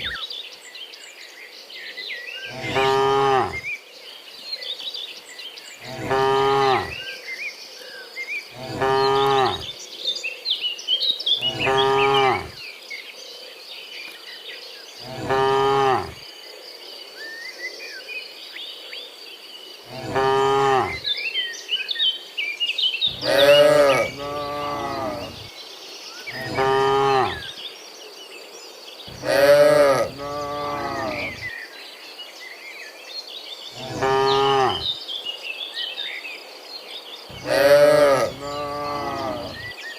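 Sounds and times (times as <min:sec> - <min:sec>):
cows mooing: 0:02.5 - 0:03.6, 0:05.8 - 0:07.0, 0:08.6 - 0:09.7, 0:11.4 - 0:12.6, 0:15.0 - 0:16.2, 0:19.9 - 0:21.0, 0:23.1 - 0:25.5, 0:26.4 - 0:27.4, 0:29.1 - 0:31.5, 0:33.8 - 0:34.9, 0:37.3 - 0:39.7.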